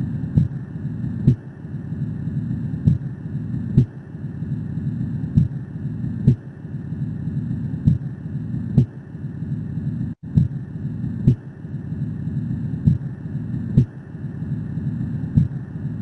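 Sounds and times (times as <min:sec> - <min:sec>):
heartbeat through stethoscope: 0:00.0 - 0:01.4, 0:02.4 - 0:04.0, 0:04.9 - 0:06.5, 0:07.3 - 0:09.0, 0:09.6 - 0:11.5, 0:12.4 - 0:14.0, 0:15.0 - 0:16.0.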